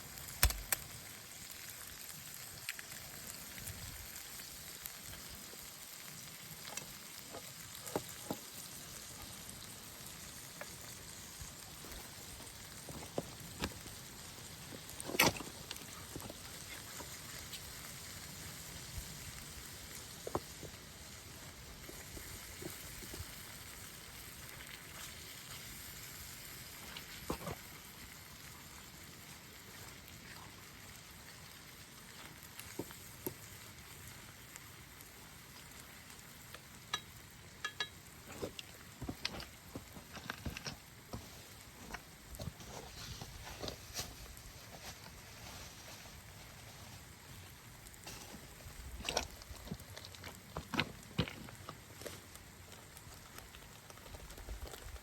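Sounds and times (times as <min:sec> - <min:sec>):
food sizzling in a pan: 0:00.0 - 0:51.2
sharp pops: 0:00.4 - 0:00.9.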